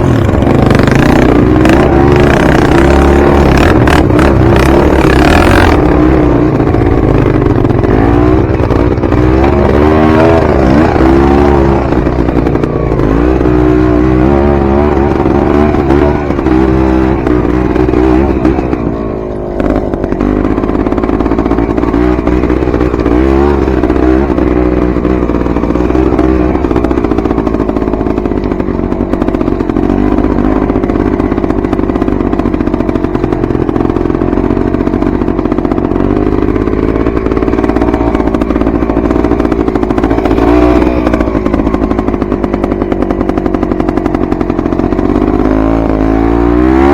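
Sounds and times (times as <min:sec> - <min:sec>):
dirt bike engine revving: 0:00.0 - 0:46.9.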